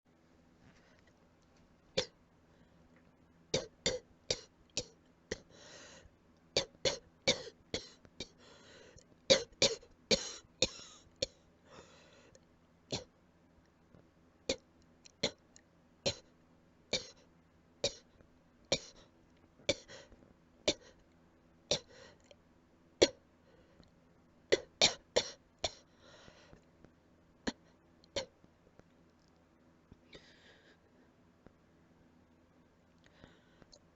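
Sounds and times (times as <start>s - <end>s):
breathy sounds: 8.2s - 9.1s, 33.0s - 33.9s.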